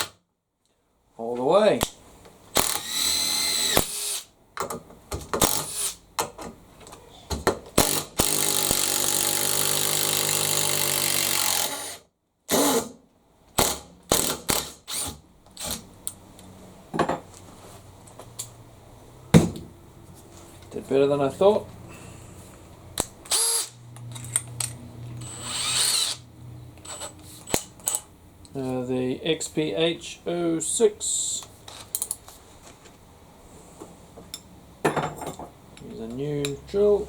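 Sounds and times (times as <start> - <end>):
impact driver driving screw: 2.6 - 4.3, 5.4 - 6.0, 7.8 - 13.0, 23.0 - 23.8, 25.2 - 26.2.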